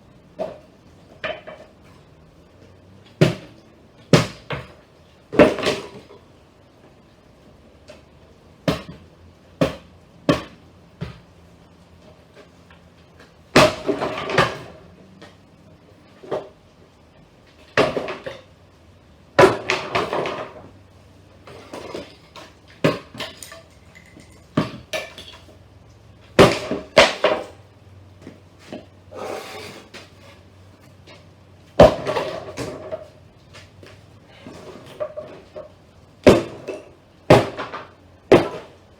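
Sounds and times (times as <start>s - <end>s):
wooden cabinet knocked apart: 13.5s - 14.8s, 19.4s - 20.7s, 26.4s - 27.6s, 31.8s - 33.1s, 36.2s - 38.8s.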